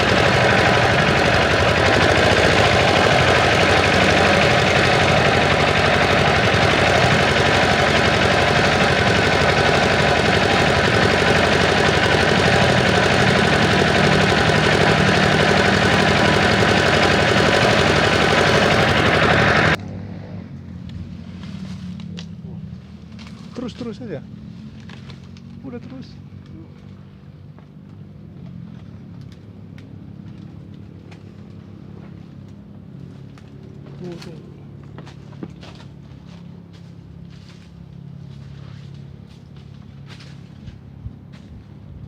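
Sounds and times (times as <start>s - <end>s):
boat motor running: 0.0s - 19.8s.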